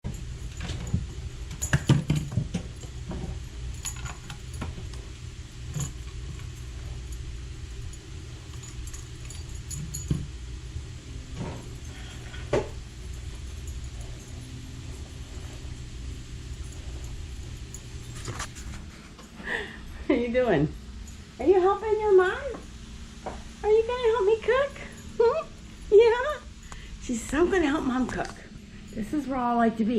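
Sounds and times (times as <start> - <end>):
steady low hum: 0.0 - 29.9
clinks and knocks: 0.1 - 5.0, 5.6 - 6.8, 8.5 - 10.4.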